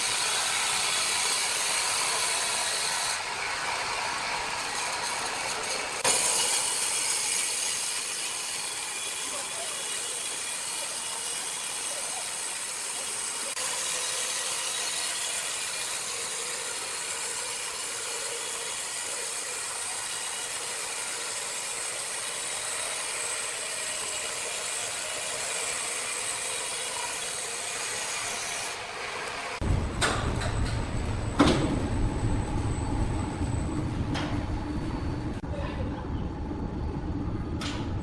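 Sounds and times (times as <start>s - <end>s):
sawmill saw cutting wood: 0.0s - 29.7s.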